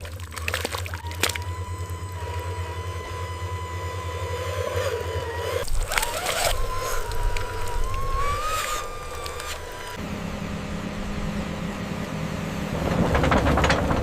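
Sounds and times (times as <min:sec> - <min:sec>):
toy electric motors whining: 0:00.3 - 0:10.0
sharp clicks and knocks: 0:12.8 - 0:14.0.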